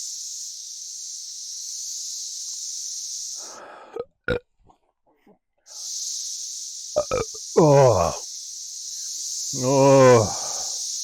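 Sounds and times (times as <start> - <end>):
high-pitched insect drone: 0.0 - 3.7, 5.7 - 11.0
short rough burp: 7.0 - 8.2.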